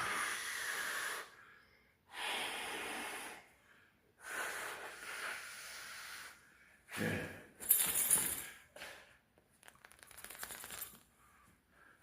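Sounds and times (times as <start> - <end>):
man breathing heavily: 0.0 - 7.6.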